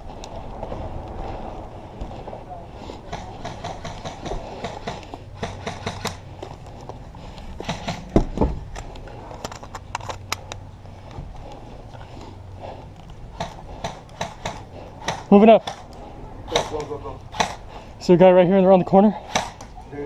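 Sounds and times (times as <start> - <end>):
low rumble: 0.0 - 13.8
sharp clicks and knocks: 3.1 - 6.2
loud thumps: 7.6 - 8.7.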